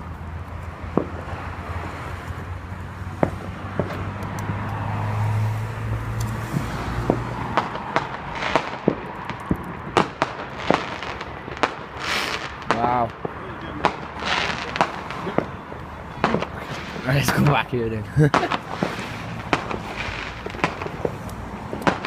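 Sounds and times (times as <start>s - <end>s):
fireworks bangs and cracks: 0.0s - 22.0s
firework hissing burst: 6.4s - 9.2s, 10.0s - 12.8s, 18.3s - 22.0s.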